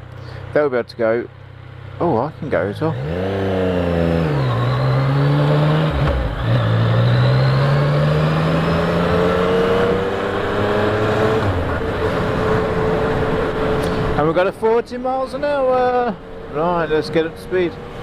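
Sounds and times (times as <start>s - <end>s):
motorcycle engine accelerating: 1.4s - 14.5s.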